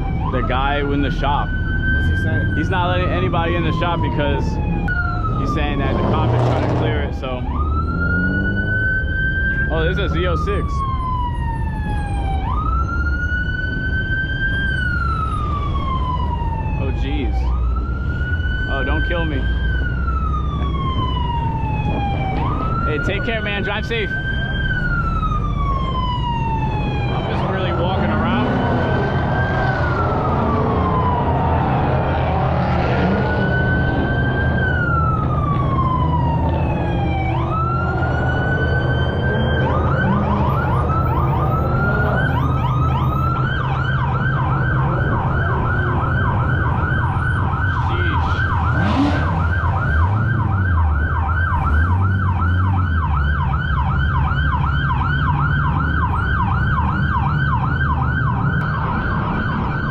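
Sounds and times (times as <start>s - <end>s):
police siren wailing and yelping: 0.0s - 59.9s
car engines idling: 14.8s - 58.6s.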